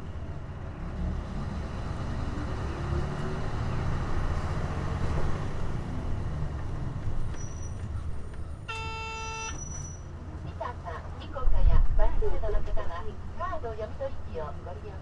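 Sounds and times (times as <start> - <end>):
bus engine rumble: 0.0 - 15.0.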